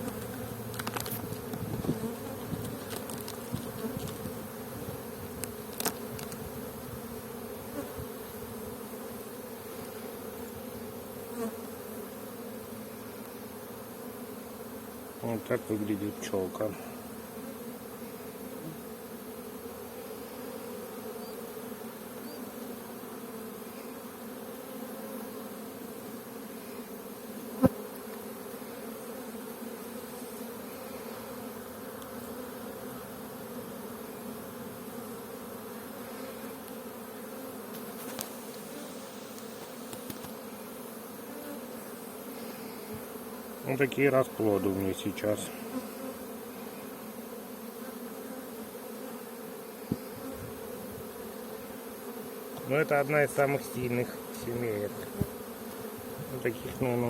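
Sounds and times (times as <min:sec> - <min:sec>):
bees buzzing: 0:00.0 - 0:57.0.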